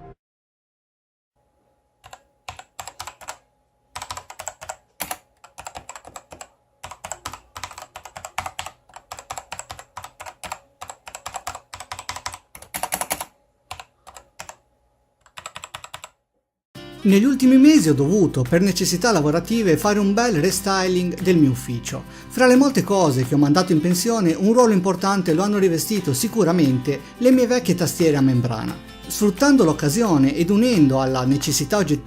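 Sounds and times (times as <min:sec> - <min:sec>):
mechanical keyboard typing: 0:02.0 - 0:03.4, 0:04.0 - 0:14.6, 0:15.2 - 0:16.2.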